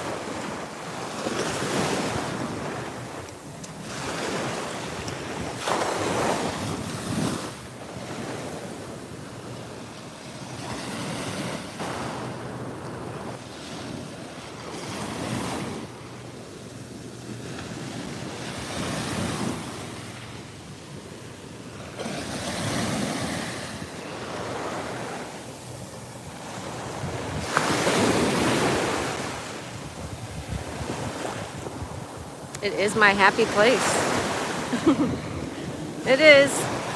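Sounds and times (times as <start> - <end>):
ocean surf breaking on beach: 0.0 - 36.9
wind buffeting microphone: 26.2 - 32.6, 34.7 - 36.9.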